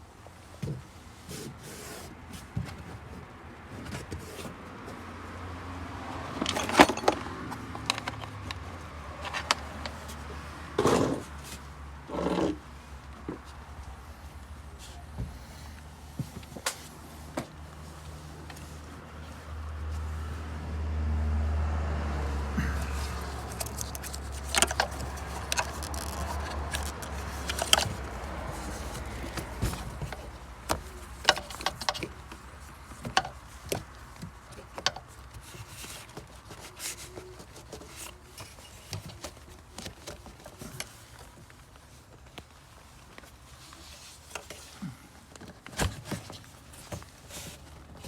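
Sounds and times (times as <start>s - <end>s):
hand tools clinking on metal: 6.4s - 8.2s.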